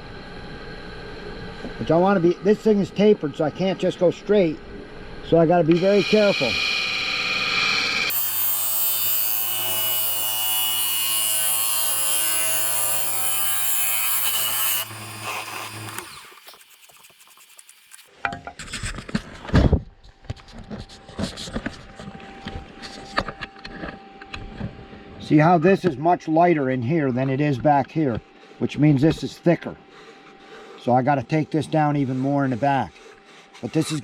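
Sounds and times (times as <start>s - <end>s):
lathe motor hum: 0.2s - 18.1s
turning tool cutting wood hiss: 5.6s - 18.1s.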